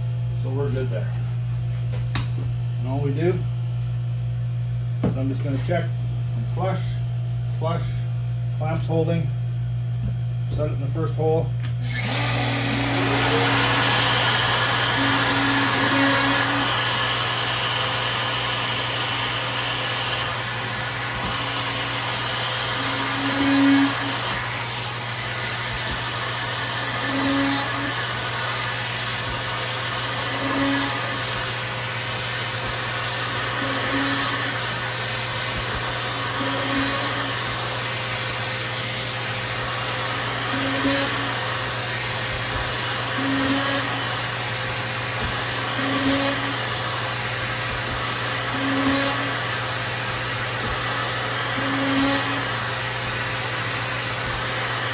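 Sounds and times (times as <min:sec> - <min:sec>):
plunge router running: 0:11.6 - 0:54.9
suction drone: 0:11.8 - 0:54.9.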